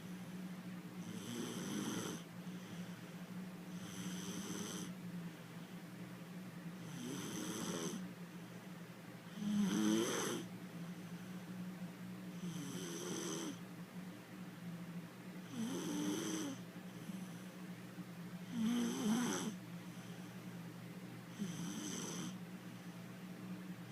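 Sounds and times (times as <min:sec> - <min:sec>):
girl snoring: 0:01.0 - 0:02.2, 0:03.8 - 0:04.9, 0:06.8 - 0:08.0, 0:09.3 - 0:10.5, 0:12.4 - 0:13.6, 0:15.5 - 0:16.6, 0:18.5 - 0:19.6, 0:21.4 - 0:22.4.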